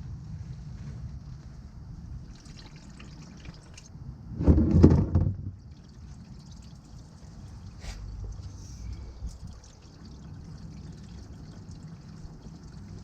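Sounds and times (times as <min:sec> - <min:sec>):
oil trickling into drain pan: 0:02.2 - 0:03.9, 0:05.6 - 0:13.0.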